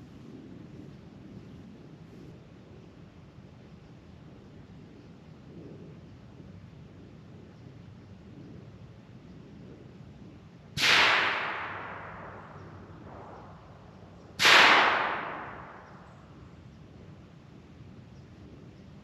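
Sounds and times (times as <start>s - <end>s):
gunshots with long echo: 10.8s - 16.1s.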